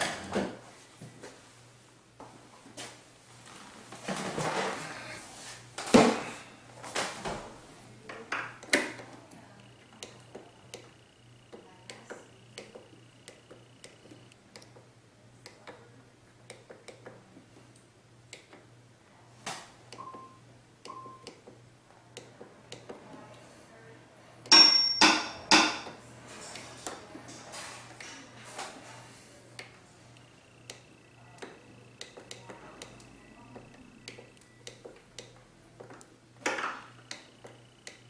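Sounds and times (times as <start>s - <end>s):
clicks of pressing controls: 19.9s - 21.6s
faint steady tone: 29.2s - 35.3s.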